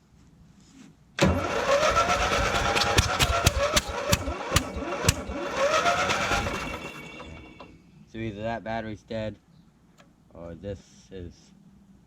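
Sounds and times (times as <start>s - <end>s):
electric starter cranking engine: 1.2s - 7.7s.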